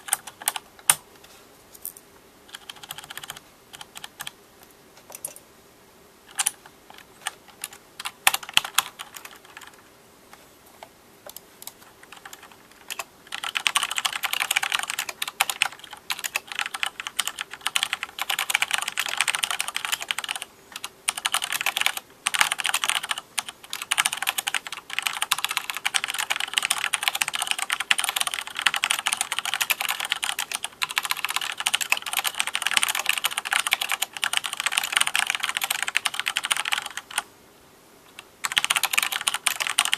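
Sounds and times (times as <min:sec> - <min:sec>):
mechanical keyboard typing: 0:00.0 - 0:01.0, 0:02.5 - 0:04.4, 0:06.3 - 0:09.8, 0:11.3 - 0:37.3, 0:38.2 - 0:39.9.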